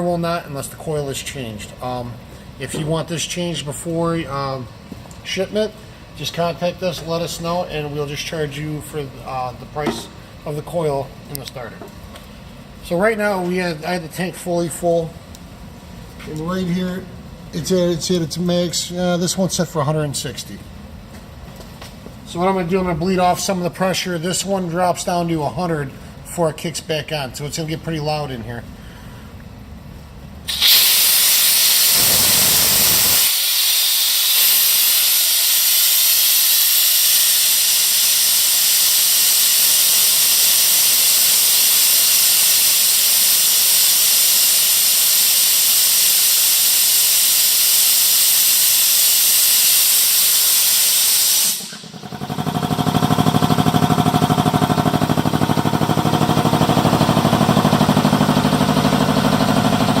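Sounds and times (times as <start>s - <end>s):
air compressor running: 1.1s - 10.8s, 30.5s - 60.0s
compressed air hissing loudly: 30.5s - 60.0s.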